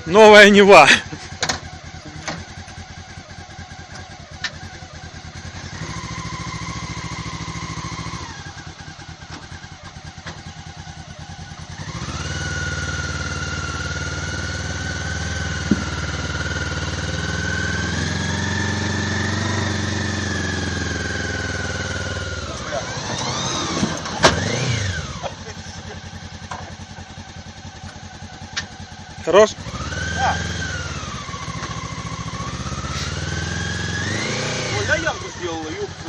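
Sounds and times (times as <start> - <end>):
engine whine: 0.0 - 36.0
vehicle engine idling and revving: 0.0 - 36.0
sharp knock: 15.6 - 16.0.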